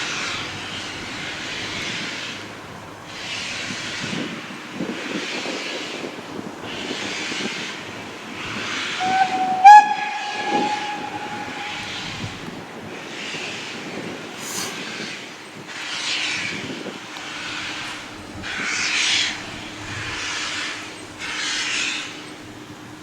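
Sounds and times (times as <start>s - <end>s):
steam locomotive whistle: 8.9s - 12.7s.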